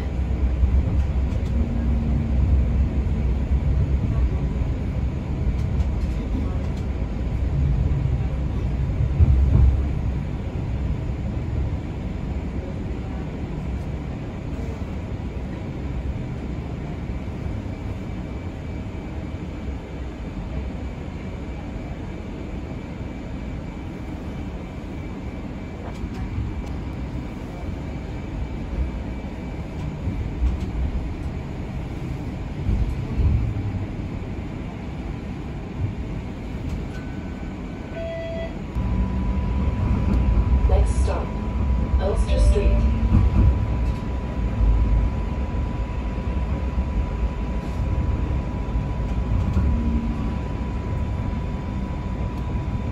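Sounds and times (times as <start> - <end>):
streetcar wheels rumbling on rails: 0.0 - 52.9
faint steady whine: 36.9 - 43.0.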